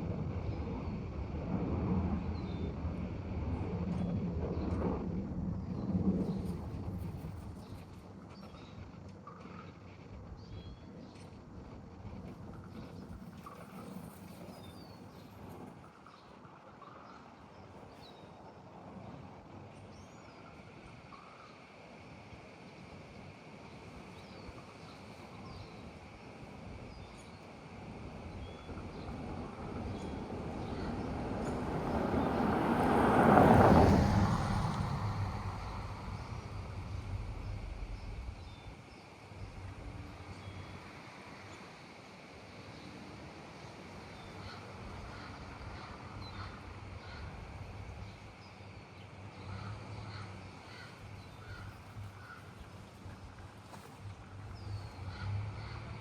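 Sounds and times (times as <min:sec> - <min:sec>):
vehicle passing by: 0:28.3 - 0:38.8, 0:53.7 - 0:56.0
steady low rumble: 0:34.0 - 0:40.9.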